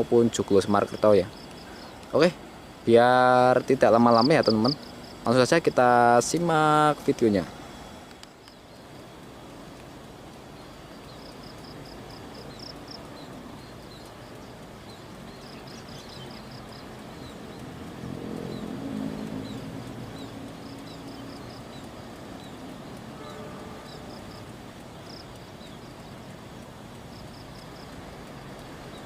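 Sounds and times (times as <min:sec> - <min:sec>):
steady rushing background: 0:00.0 - 0:29.0
low engine hum: 0:12.4 - 0:29.0.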